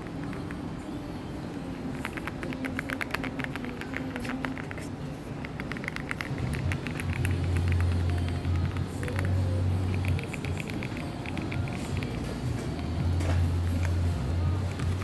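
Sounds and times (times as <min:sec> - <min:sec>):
mechanical keyboard typing: 0:01.9 - 0:12.2.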